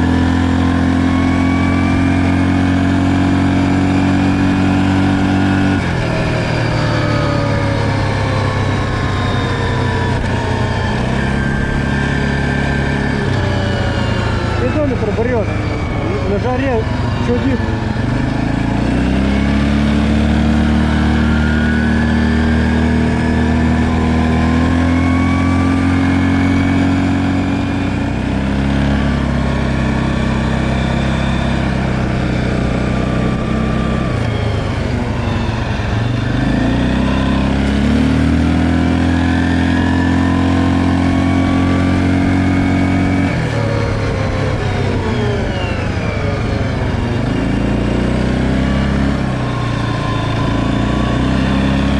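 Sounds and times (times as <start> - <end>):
atv engine accelerating: 0.0 - 51.9.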